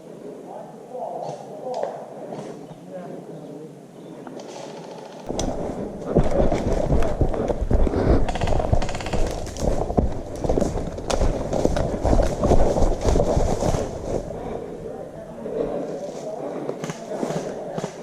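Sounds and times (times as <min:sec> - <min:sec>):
camera jostling thumps: 0:05.2 - 0:14.8.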